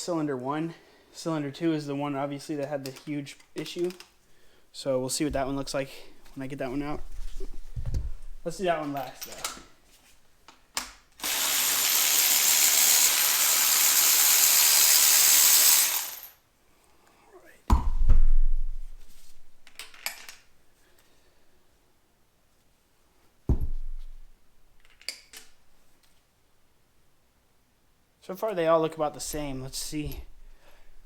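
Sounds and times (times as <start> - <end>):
heavy metal thuds: 5.2 - 8.7, 23.5 - 24.3
loud steady hiss: 11.2 - 16.4.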